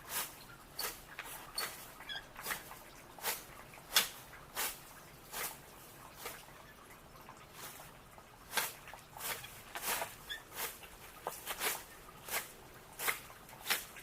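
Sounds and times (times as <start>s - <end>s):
scratchy rustling scrapes: 8.5s - 14.0s.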